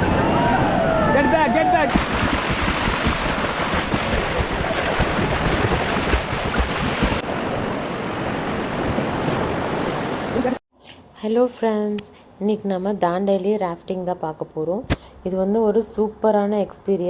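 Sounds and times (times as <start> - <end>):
rushing river water: 1.9 - 10.5.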